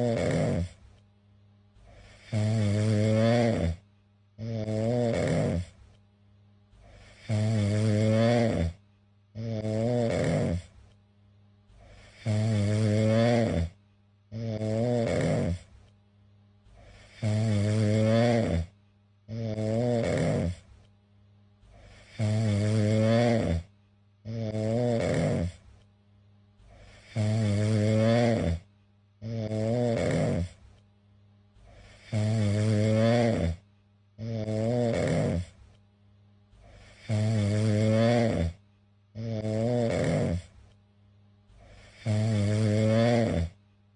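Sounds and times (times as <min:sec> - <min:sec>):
cat snoring: 0:00.0 - 0:00.9, 0:01.8 - 0:03.8, 0:04.4 - 0:05.9, 0:06.8 - 0:08.8, 0:09.4 - 0:10.8, 0:11.7 - 0:15.8, 0:16.7 - 0:20.7, 0:21.7 - 0:23.7, 0:24.3 - 0:25.7, 0:26.6 - 0:30.8, 0:31.6 - 0:33.6, 0:34.2 - 0:35.7, 0:36.6 - 0:38.6, 0:39.2 - 0:40.6, 0:41.5 - 0:43.6.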